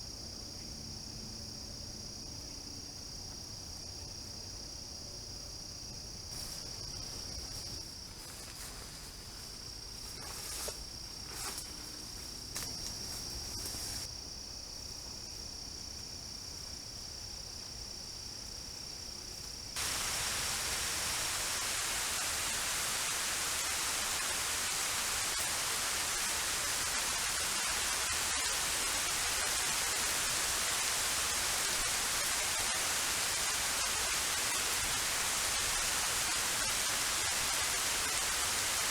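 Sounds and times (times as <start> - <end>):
high insect trill: 0.0 - 38.9
heavy rain pouring: 19.8 - 38.9.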